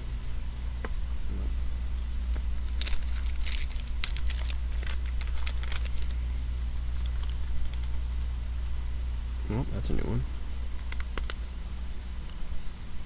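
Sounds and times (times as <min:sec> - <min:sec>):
steady low hum: 0:00.0 - 0:13.0
cards being shuffled: 0:02.3 - 0:06.2, 0:06.9 - 0:08.0, 0:10.8 - 0:11.4.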